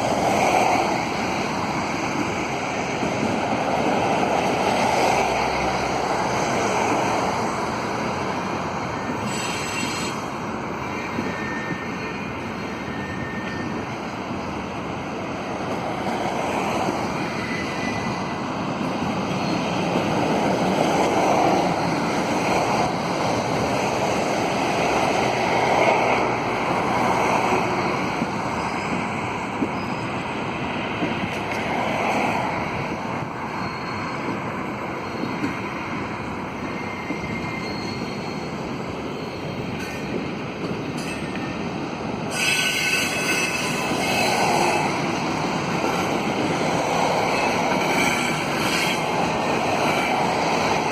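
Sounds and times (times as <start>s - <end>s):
train wheels rumbling on rail: 0.0s - 50.9s
high wheel squeals: 8.9s - 14.0s, 17.0s - 18.5s, 19.3s - 20.3s, 32.5s - 40.3s, 42.3s - 50.9s.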